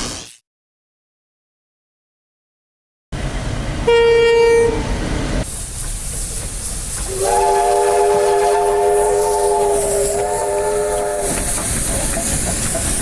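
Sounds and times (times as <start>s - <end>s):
rumbling train: 3.2s - 13.0s
locomotive horn blast: 3.8s - 5.0s, 7.1s - 11.5s.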